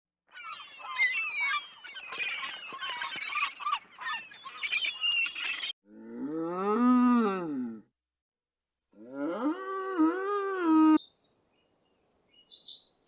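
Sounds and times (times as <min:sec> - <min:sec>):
flock of birds chirping: 0:00.3 - 0:05.8, 0:11.9 - 0:13.0.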